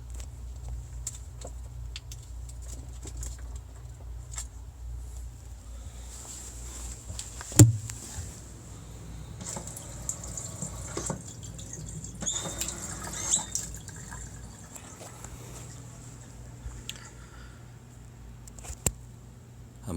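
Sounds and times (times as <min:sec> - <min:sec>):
low steady hum: 0:00.0 - 0:19.9
washer-dryer thump: 0:07.5 - 0:08.4
short high squeaks: 0:12.2 - 0:13.8.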